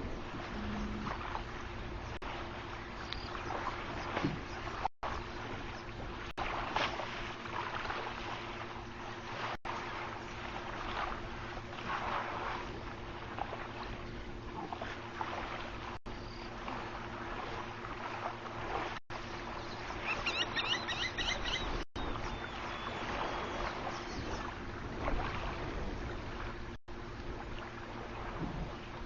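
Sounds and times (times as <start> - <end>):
bird chirping: 19.6 - 24.4.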